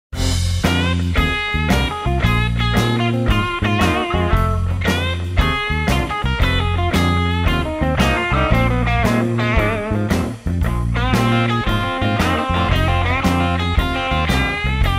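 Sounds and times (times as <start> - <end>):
blues-rock music with electric guitar: 0.2 - 14.9.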